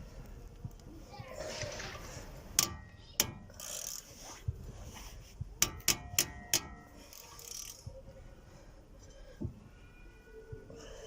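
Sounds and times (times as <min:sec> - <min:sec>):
socket wrench clicking and clanking: 0:02.5 - 0:04.1, 0:05.6 - 0:07.9
soft hissing noise: 0:03.5 - 0:05.6.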